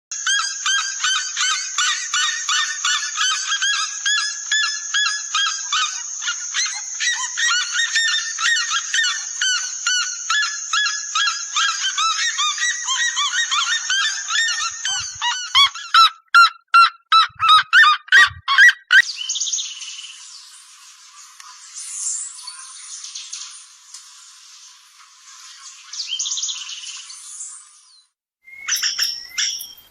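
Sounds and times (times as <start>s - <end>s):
loud bird calls: 0.2s - 20.2s
birds chirping: 0.6s - 16.1s, 28.5s - 29.9s.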